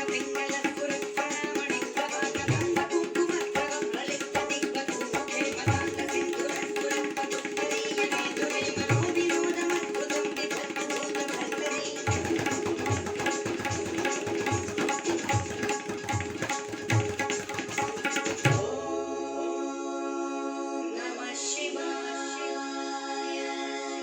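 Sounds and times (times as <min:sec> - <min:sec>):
tabla playing fast strokes: 0:00.0 - 0:18.7.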